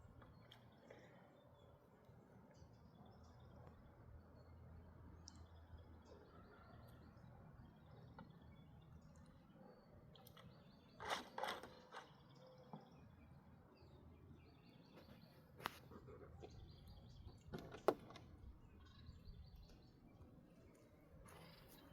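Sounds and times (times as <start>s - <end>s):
faint bird chirping: 0.0s - 21.9s.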